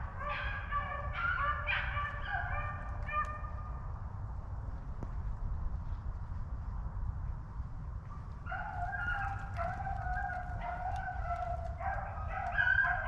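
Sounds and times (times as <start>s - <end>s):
hounds baying: 0.0s - 3.7s, 8.2s - 13.0s.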